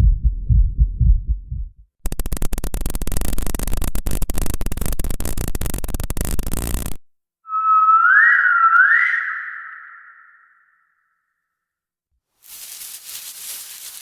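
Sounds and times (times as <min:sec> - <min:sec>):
dense crackling static: 0:02.0 - 0:07.1, 0:12.4 - 0:14.0
eerie whistle-like tone swooping up: 0:07.5 - 0:11.0.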